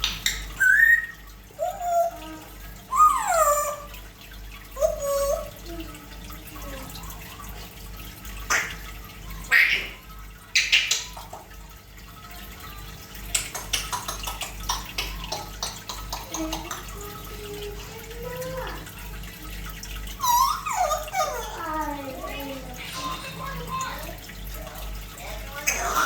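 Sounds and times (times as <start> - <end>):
parrot squawking: 0.2 - 2.3, 2.9 - 3.9, 9.3 - 11.3, 20.2 - 21.6, 25.6 - 26.0
parrot whistling: 0.6 - 2.2
parrot clicking: 13.3 - 16.9.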